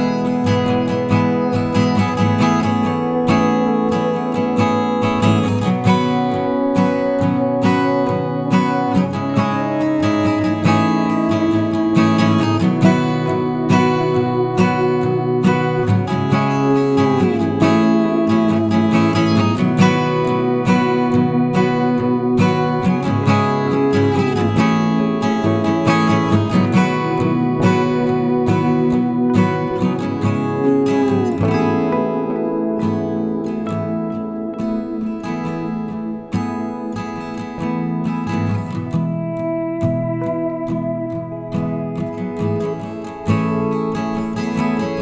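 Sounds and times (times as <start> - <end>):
acoustic guitar: 0.0 - 45.0.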